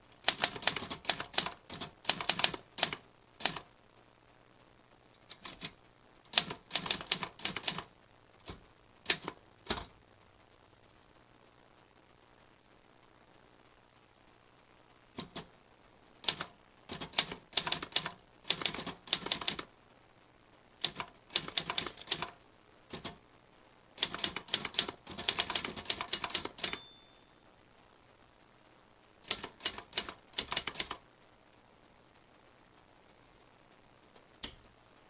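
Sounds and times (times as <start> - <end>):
typewriter keys clicking: 0.2 - 3.7, 5.3 - 7.9, 8.5 - 9.9, 15.2 - 15.5, 16.2 - 19.7, 20.8 - 23.2, 24.0 - 26.8, 29.3 - 31.0
typewriter bell ring: 0.3 - 4.0, 6.3 - 8.0, 16.3 - 19.8, 20.8 - 23.2, 24.0 - 27.4, 29.3 - 31.0.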